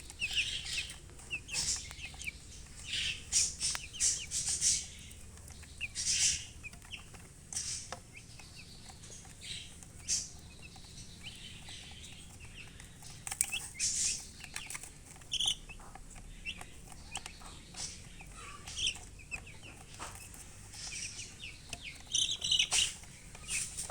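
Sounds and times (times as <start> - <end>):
baby chicks peeping: 0.0 - 23.9
hen clucking: 0.0 - 23.9
scratchy noises: 17.4 - 23.9.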